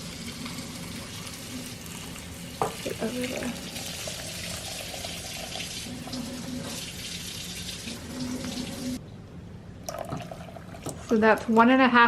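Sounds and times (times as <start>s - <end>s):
water pouring into a saucepan: 0.0s - 9.0s.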